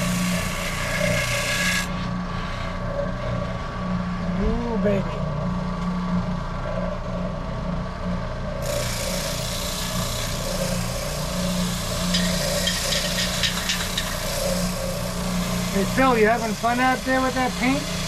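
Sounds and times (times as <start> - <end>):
sanding wood: 0.0 - 2.8, 8.7 - 18.0
shop motor hum: 0.0 - 18.0.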